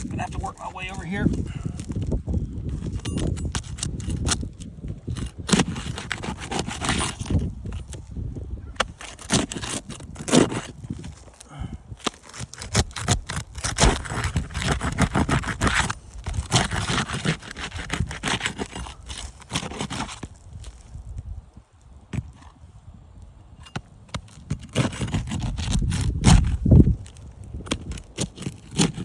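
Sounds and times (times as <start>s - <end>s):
roof shingles tearing loose: 3.3s - 8.0s, 8.8s - 20.8s, 24.2s - 29.0s.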